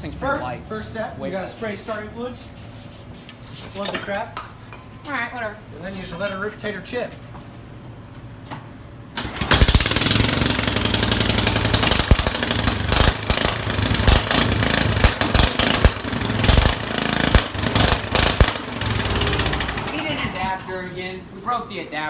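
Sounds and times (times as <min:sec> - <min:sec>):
sharp exhaust pops: 0:09.2 - 0:20.5
loud ragged lawnmower engine: 0:09.2 - 0:20.6.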